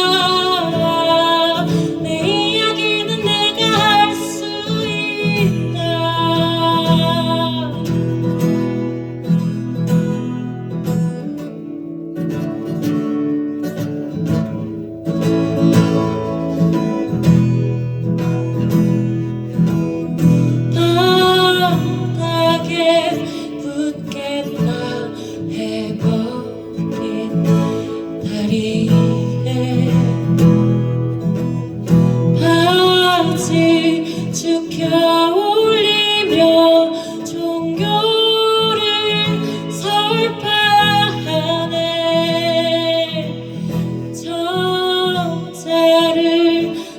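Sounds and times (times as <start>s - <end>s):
person singing: 0.0s - 8.8s, 20.3s - 46.9s
acoustic guitar strumming chords: 0.0s - 46.9s.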